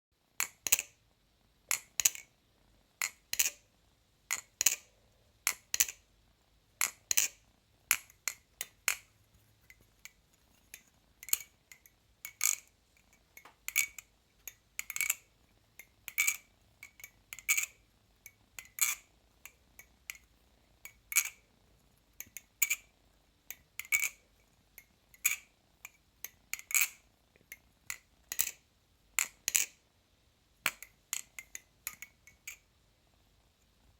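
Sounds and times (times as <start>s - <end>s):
butterfly knife handles clicking: 0.4s - 0.9s, 3.0s - 3.6s, 4.3s - 4.9s, 5.5s - 6.0s, 6.8s - 9.1s, 9.7s - 12.7s, 13.4s - 15.2s, 15.8s - 17.7s, 21.1s - 21.4s, 23.8s - 24.2s, 25.2s - 27.0s, 27.9s - 28.6s, 29.2s - 29.8s, 30.7s - 32.6s.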